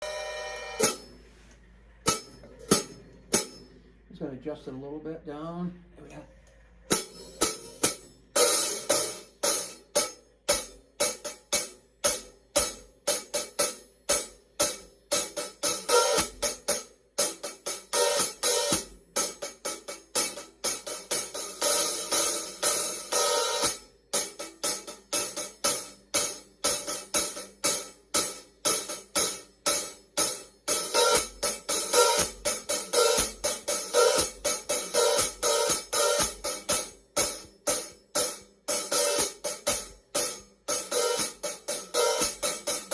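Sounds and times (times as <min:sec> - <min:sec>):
hi-hat cymbal strokes: 0:02.1 - 0:04.0, 0:06.9 - 0:42.9.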